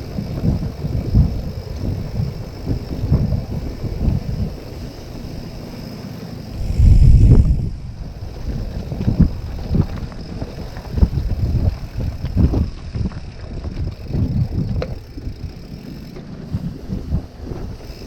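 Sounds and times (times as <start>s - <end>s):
wind buffeting microphone: 6.6s - 15.0s.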